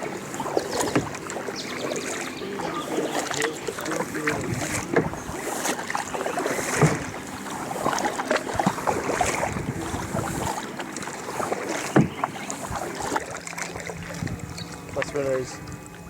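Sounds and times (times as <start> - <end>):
paddle splashing in water: 0.0 - 16.0.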